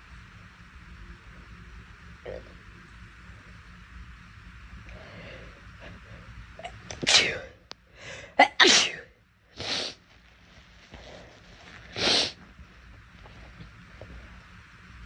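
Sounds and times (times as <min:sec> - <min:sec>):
girl sneezing: 0:06.6 - 0:07.5, 0:08.4 - 0:10.0.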